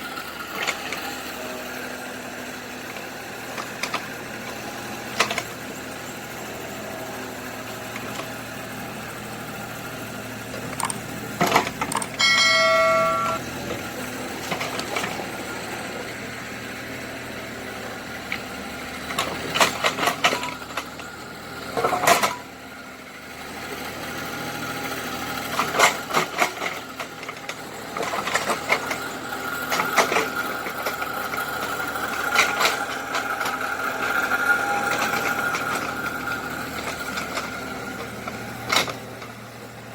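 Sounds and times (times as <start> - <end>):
excavator motor hum: 0.0 - 39.9
metal clanking: 10.5 - 13.4
steady whine: 10.6 - 13.4
ringing clang: 12.0 - 13.4.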